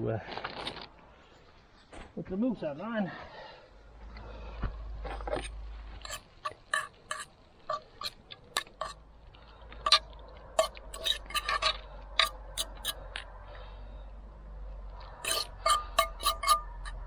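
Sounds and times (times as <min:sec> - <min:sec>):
metal utensil clinking on a pot: 0:10.6 - 0:13.0, 0:15.2 - 0:17.0.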